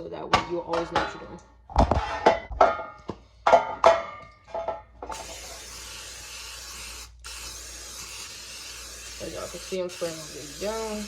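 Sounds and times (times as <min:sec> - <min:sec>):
aerosol spray hissing: 0:05.1 - 0:11.0.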